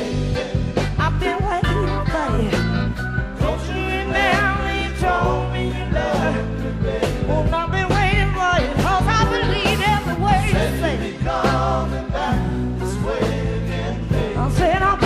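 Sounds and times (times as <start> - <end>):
live rock band playing: 0.0 - 15.0
person singing with vibrato: 0.9 - 6.3.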